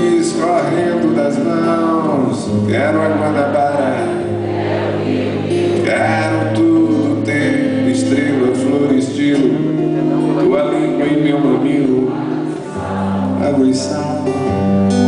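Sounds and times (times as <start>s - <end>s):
man singing: 0.0s - 4.4s, 5.4s - 14.9s
guitar: 0.0s - 15.0s.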